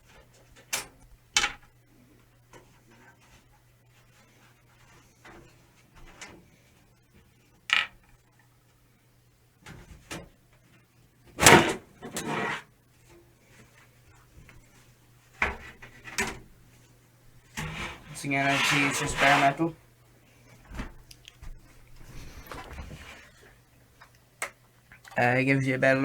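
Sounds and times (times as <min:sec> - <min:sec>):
metal panel sliding clatter: 0:11.4 - 0:12.6, 0:17.6 - 0:19.6.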